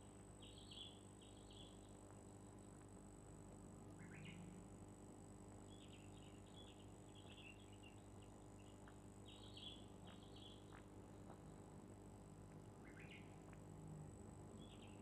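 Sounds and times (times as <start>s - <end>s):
low room hum: 0.0s - 15.0s.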